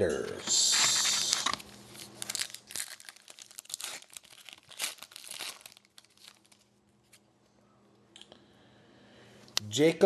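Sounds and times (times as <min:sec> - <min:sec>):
foil wrapper crinkling and tearing: 0:00.7 - 0:07.2.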